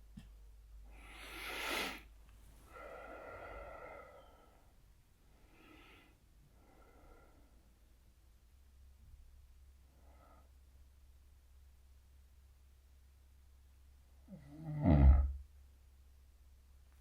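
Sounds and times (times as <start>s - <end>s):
man snoring: 14.3s - 15.4s.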